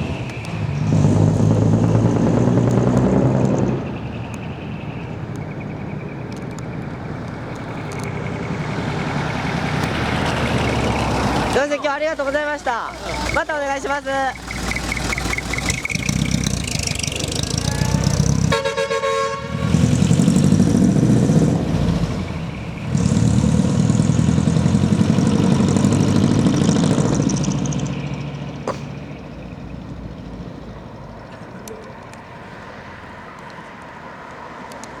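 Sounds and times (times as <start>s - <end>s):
diesel truck engine accelerating: 0.0s - 35.0s
air horn: 17.5s - 19.9s.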